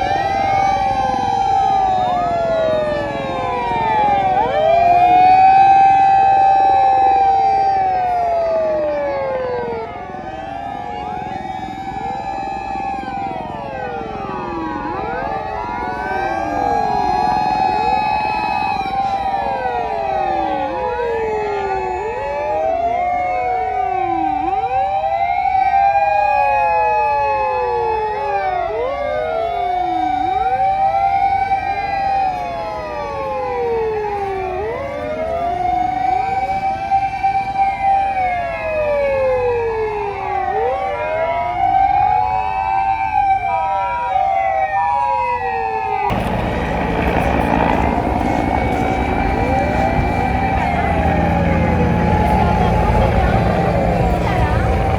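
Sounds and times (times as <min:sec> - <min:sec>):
engine and road noise: 0:00.0 - 0:54.9
fire engine sirens wailing: 0:00.0 - 0:54.9
steady high pulsing tone: 0:46.1 - 0:54.9.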